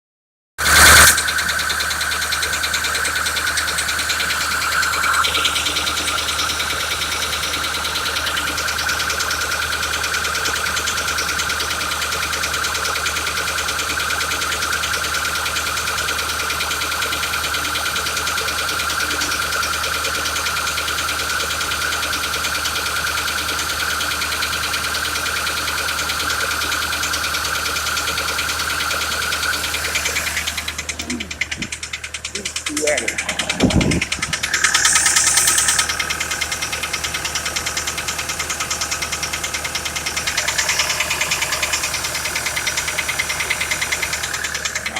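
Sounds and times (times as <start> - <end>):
diesel engine running with knock: 0.6 - 44.9
high whine: 0.7 - 8.8, 30.9 - 36.4.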